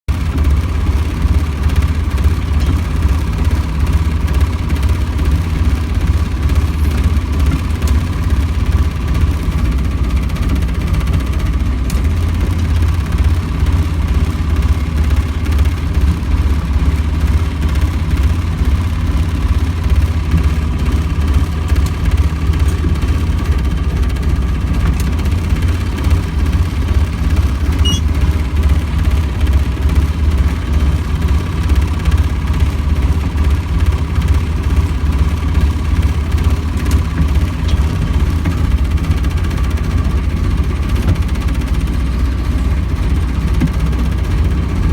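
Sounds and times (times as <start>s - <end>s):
boat engine idling: 0.1s - 44.9s.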